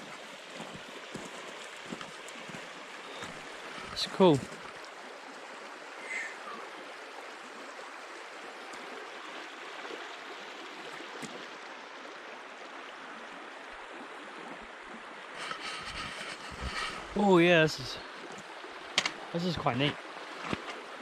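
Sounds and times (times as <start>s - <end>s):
river water rushing and babbling: 0.0s - 21.0s.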